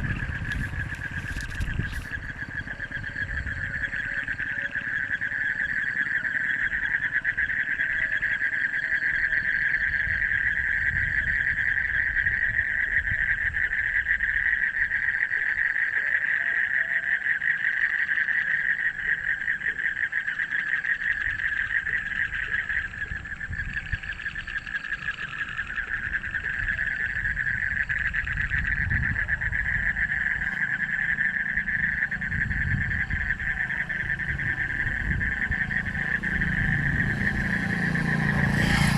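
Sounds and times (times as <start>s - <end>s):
low rumble: 0.0s - 5.8s, 21.9s - 38.9s
frogs calling in a pulsing trill: 0.0s - 38.9s.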